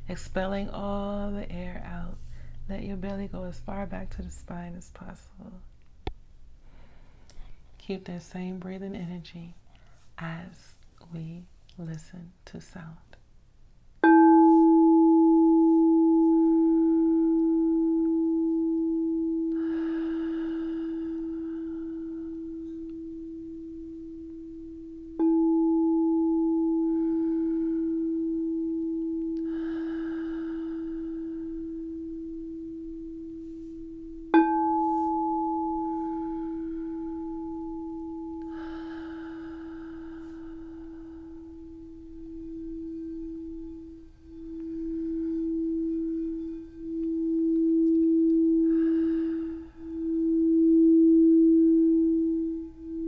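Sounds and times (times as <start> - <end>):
singing bowl ringing: 14.0 - 53.0.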